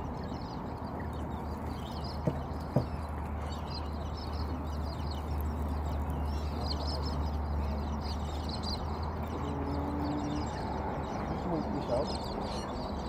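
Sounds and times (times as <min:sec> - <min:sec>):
birds chattering calls: 0:00.0 - 0:13.0.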